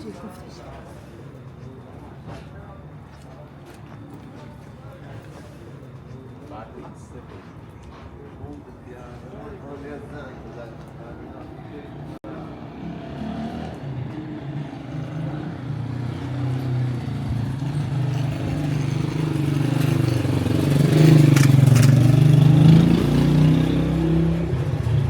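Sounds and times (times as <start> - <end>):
vehicle engine running: 11.8 - 25.0.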